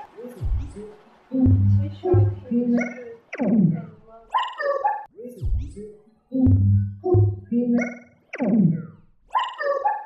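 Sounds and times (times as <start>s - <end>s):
synthesizer tones: 1.3s - 4.0s, 6.4s - 9.0s.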